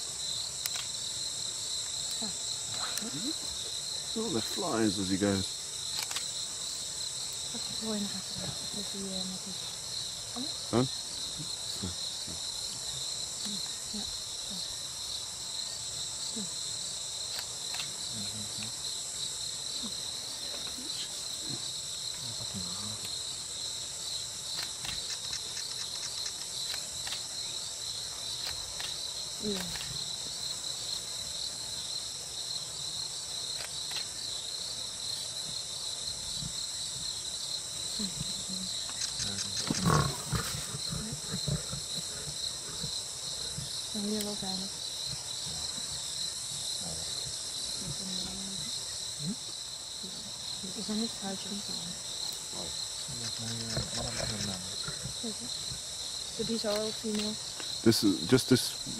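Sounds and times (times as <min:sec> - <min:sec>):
crickets chirping: 0:00.0 - 0:58.9
lion growling: 0:39.2 - 0:43.9, 0:52.6 - 0:55.8.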